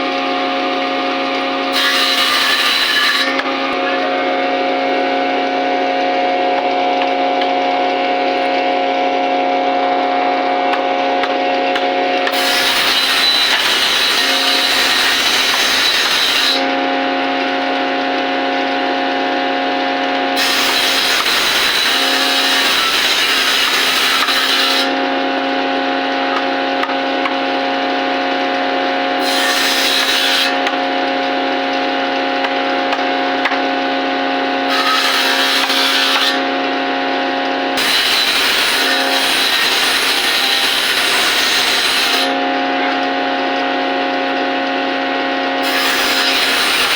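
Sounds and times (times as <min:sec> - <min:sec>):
power tool motor whine: 0:00.0 - 0:10.7, 0:12.1 - 0:17.6, 0:18.8 - 0:26.8, 0:33.8 - 0:43.4, 0:44.3 - 0:46.9
loud rasping wood cutting: 0:01.0 - 0:07.6, 0:11.2 - 0:17.1, 0:20.3 - 0:25.1, 0:29.1 - 0:30.8, 0:34.5 - 0:36.6, 0:37.7 - 0:42.4, 0:45.6 - 0:46.9.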